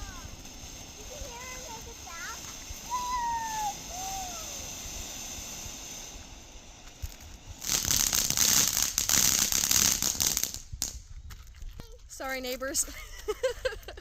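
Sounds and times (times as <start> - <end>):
firework crackling: 0.0 - 14.0
faint falling whistles: 2.6 - 5.2.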